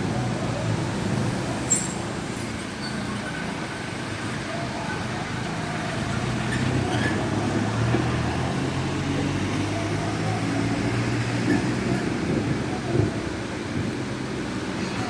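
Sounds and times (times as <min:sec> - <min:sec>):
city traffic noise: 0:00.0 - 0:15.0.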